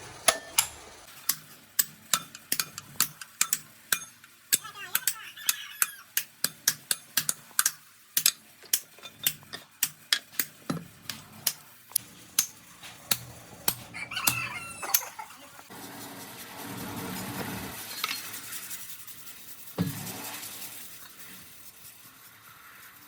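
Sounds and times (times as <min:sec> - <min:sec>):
hammer tapping on metal: 0:00.3 - 0:05.2, 0:05.8 - 0:15.0
rooster crowing: 0:13.9 - 0:15.2
steady hiss: 0:17.6 - 0:23.0.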